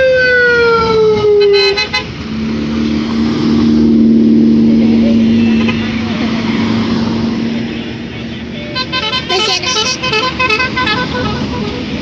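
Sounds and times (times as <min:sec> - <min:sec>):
vehicle noise: 0:00.0 - 0:12.0
multi-tone bus horn melody: 0:01.3 - 0:02.2, 0:08.6 - 0:12.0.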